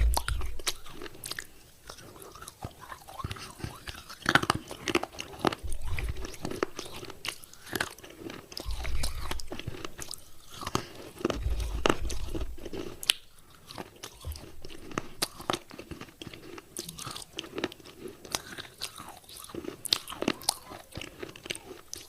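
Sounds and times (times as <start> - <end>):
low thuds of jaw biting: 0.0 - 0.8, 8.7 - 10.0, 11.3 - 13.1
person chewing gritty clay: 0.0 - 22.0.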